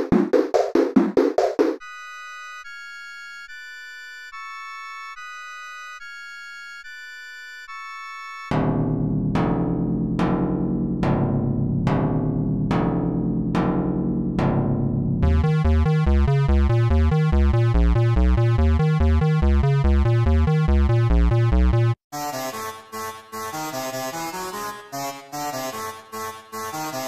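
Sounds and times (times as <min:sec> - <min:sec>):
electronic synth music: 0:08.5 - 0:27.0
heavy bass beat: 0:15.2 - 0:22.0.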